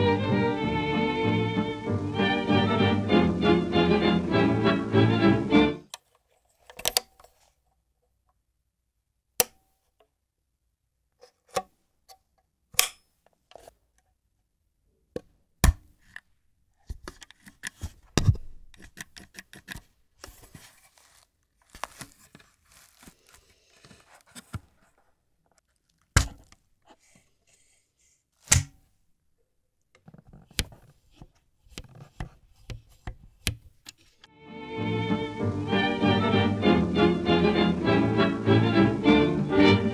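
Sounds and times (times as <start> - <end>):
faint scraping of camera parts: 5.9 - 7.7, 13.2 - 13.9, 16.9 - 28.6.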